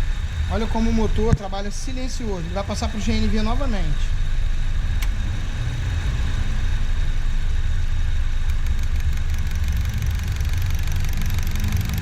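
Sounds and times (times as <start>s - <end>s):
car engine idling: 0.0s - 12.0s
fast ticking of injector rail: 8.4s - 12.0s.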